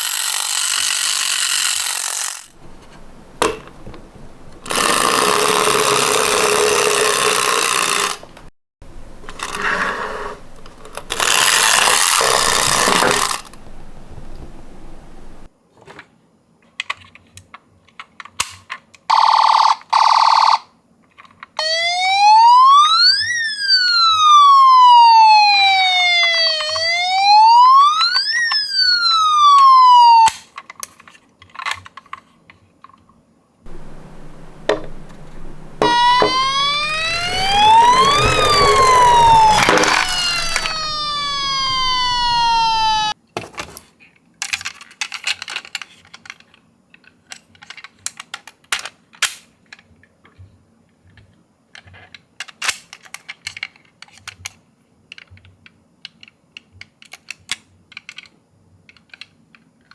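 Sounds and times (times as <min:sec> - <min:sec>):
toy cars clicking and clacking: 0:00.0 - 0:08.5, 0:09.2 - 0:14.5, 0:33.7 - 0:43.2, 0:44.4 - 0:49.4, 0:51.8 - 0:59.9
rumbling rattling noise: 0:08.2 - 0:15.5, 0:33.7 - 0:43.1
ambulance siren wailing: 0:21.6 - 0:30.3, 0:33.7 - 0:43.2
short loud flat tones: 0:33.7 - 0:43.1.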